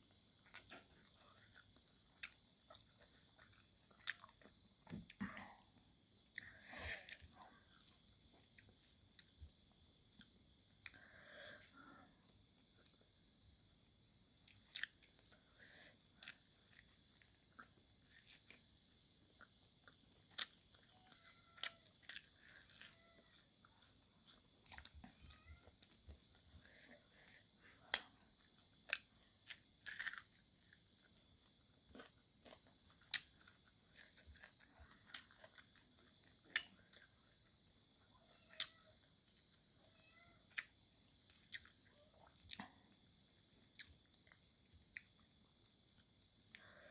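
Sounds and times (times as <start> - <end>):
crickets chirring: 0.0 - 46.9
mouth clicks and smacks of eating: 0.3 - 5.5, 14.4 - 18.6, 19.2 - 37.3, 40.5 - 43.0, 43.6 - 45.4.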